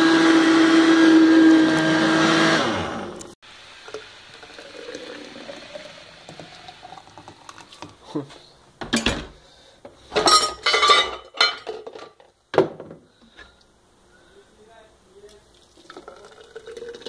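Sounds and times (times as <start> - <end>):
blender running: 0.0 - 6.8.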